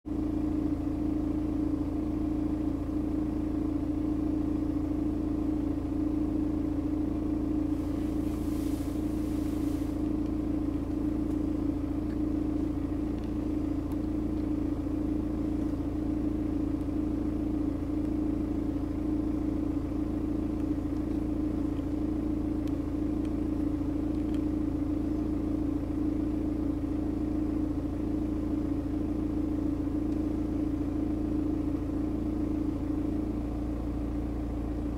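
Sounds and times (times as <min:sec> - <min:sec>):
diesel engine idling: 0:00.1 - 0:34.9.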